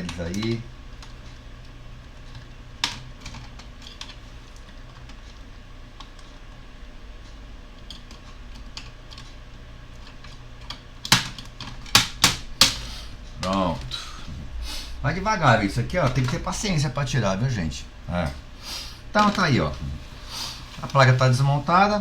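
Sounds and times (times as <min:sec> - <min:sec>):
steady low hum: 0:00.0 - 0:22.0
clicks of laptop parts handled: 0:10.0 - 0:13.6.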